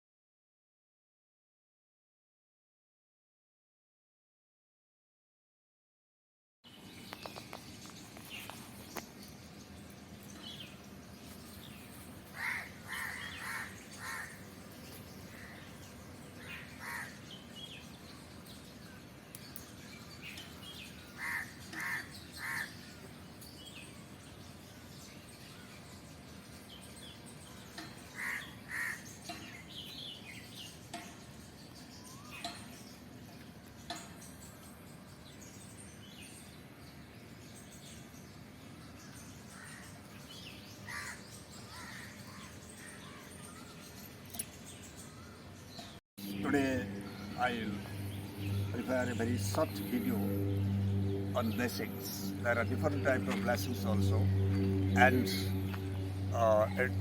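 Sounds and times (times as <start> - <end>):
crows cawing: 12.3 - 14.5, 16.4 - 17.2, 21.2 - 22.8, 28.1 - 29.1, 40.9 - 43.0.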